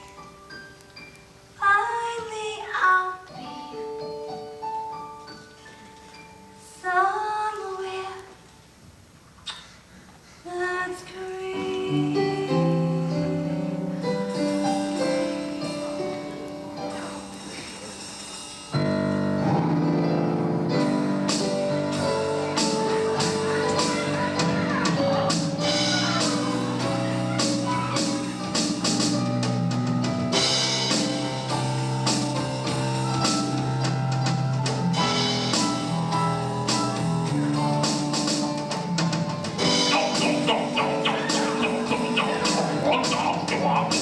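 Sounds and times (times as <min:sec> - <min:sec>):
instrumental band music: 0:11.6 - 0:44.0.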